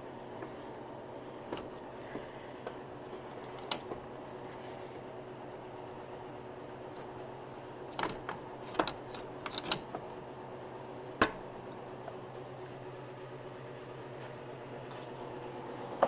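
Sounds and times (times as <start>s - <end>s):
steady low hum: 0.0s - 16.0s
metallic clicks of hand tools: 8.0s - 9.8s.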